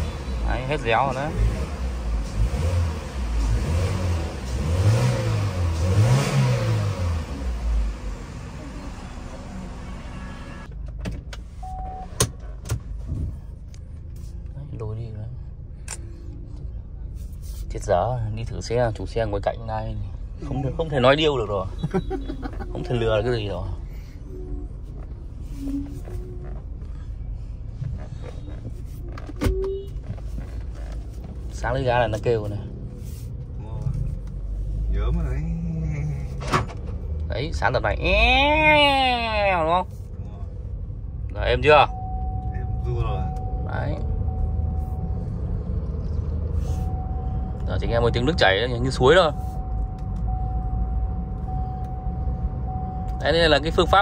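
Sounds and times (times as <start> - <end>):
car engine revving: 0.0 - 10.7, 40.6 - 54.0
car engine and road rumble: 0.0 - 54.0
brief tone: 11.6 - 12.2, 24.2 - 26.6, 28.2 - 30.2, 41.8 - 54.0.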